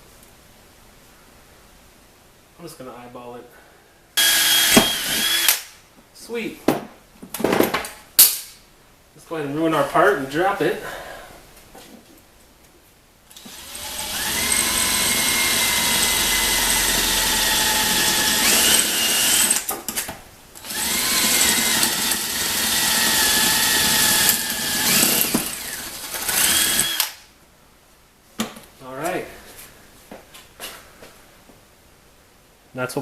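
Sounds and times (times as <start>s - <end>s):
electric drill whining: 4.2s - 5.7s, 13.3s - 19.7s, 20.6s - 27.2s.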